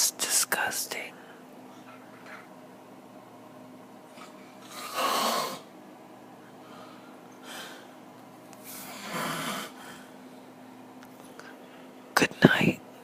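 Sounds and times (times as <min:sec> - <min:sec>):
man snoring: 0:08.9 - 0:09.8.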